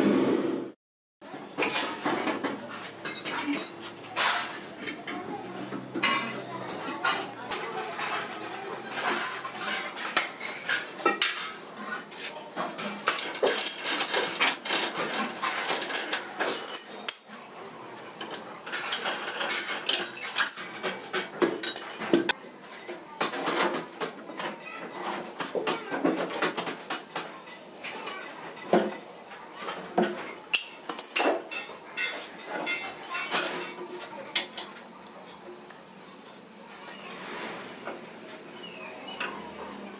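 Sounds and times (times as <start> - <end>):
hand tools clinking on metal: 12.2 - 17.4, 29.6 - 33.8.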